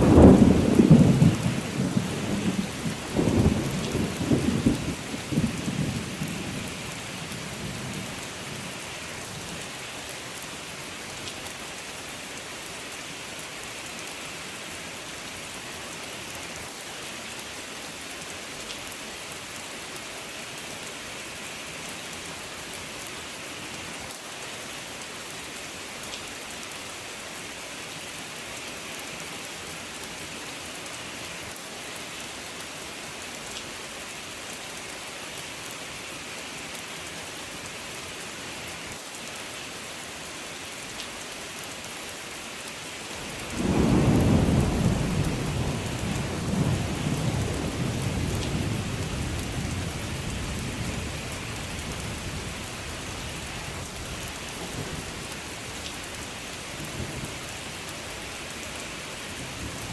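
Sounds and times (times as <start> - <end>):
thunder rumble: 0.0 - 6.6, 43.6 - 50.0
steady rain: 0.0 - 59.9.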